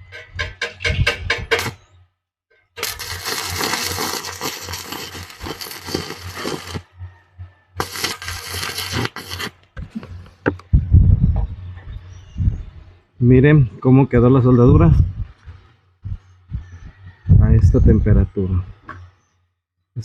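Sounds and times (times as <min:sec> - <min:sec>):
welding arc crackling: 0:02.8 - 0:06.8, 0:07.8 - 0:09.6.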